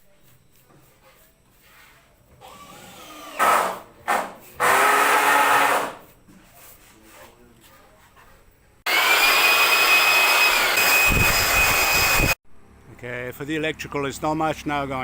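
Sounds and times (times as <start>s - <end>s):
power drill running: 2.4s - 3.7s, 4.6s - 5.9s, 8.9s - 12.4s.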